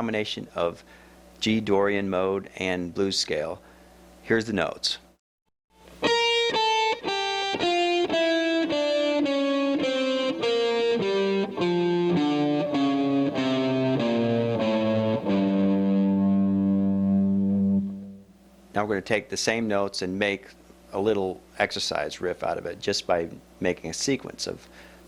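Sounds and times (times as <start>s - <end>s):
electric guitar playing a scale: 5.8s - 18.3s.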